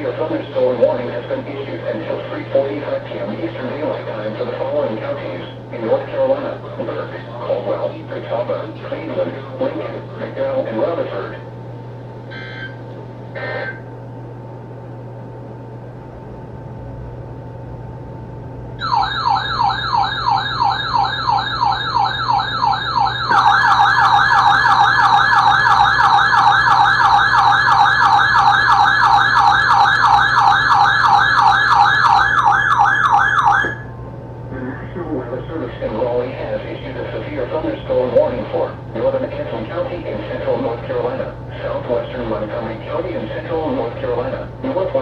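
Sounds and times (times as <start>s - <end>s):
electronic alarm siren yelping: 12.3s - 12.8s, 18.8s - 33.9s
second louder siren: 12.3s - 12.8s, 18.8s - 33.9s.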